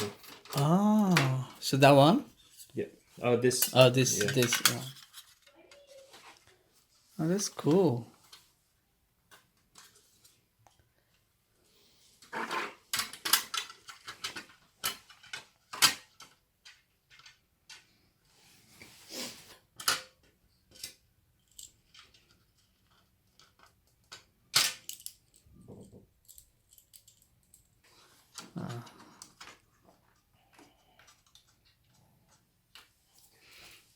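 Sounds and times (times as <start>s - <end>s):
small hard parts clattering: 0.0s - 2.8s, 3.4s - 6.6s, 12.2s - 17.9s, 19.8s - 33.8s.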